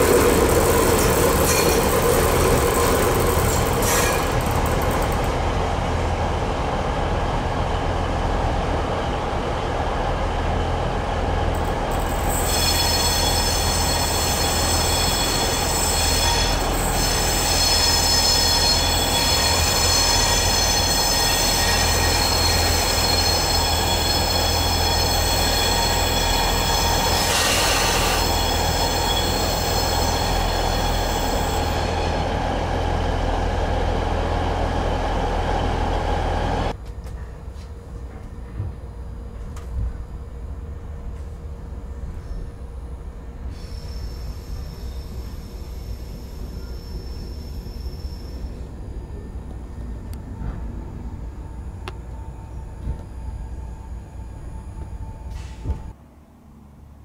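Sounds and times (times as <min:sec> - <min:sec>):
train wheels squealing: 0:00.0 - 0:04.9, 0:11.8 - 0:32.4, 0:42.1 - 0:42.7, 0:43.4 - 0:50.6, 0:51.4 - 0:55.9
high steady whistling tones: 0:43.5 - 0:50.4.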